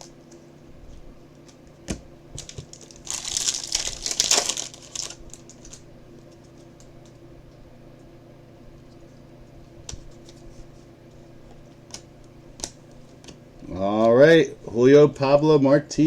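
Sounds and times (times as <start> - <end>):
card pack crinkling and rustling: 2.4 - 5.8.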